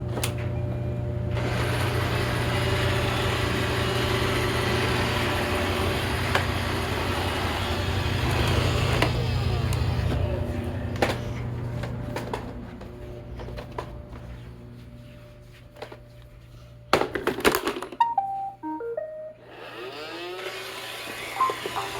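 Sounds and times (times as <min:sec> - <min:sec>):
robot vacuum motor hum: 0:19.4 - 0:21.9.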